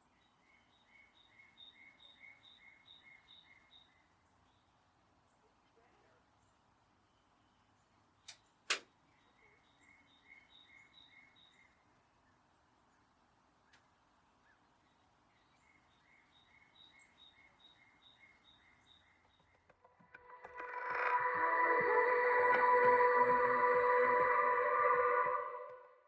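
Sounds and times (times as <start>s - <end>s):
bird chirping short high notes: 20.0s - 26.0s.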